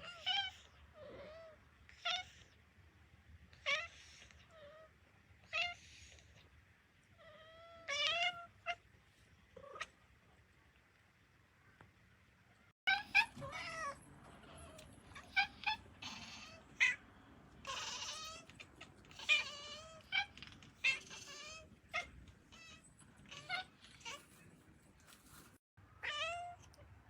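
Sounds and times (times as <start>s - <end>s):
cats meowing: 12.9s - 24.4s, 26.0s - 26.9s.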